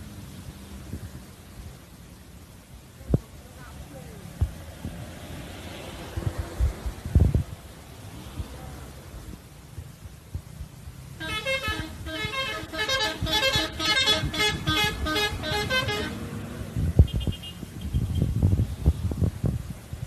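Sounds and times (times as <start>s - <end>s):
engines rumbling: 0.0s - 20.0s
bus horn playing a tune: 11.2s - 16.5s.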